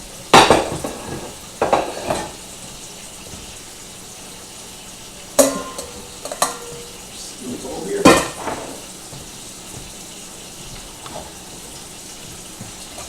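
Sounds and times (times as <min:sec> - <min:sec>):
metal cooking pot knocking: 0:00.3 - 0:02.4, 0:05.3 - 0:07.2, 0:07.8 - 0:11.6
ringing metal clang: 0:05.4 - 0:07.0.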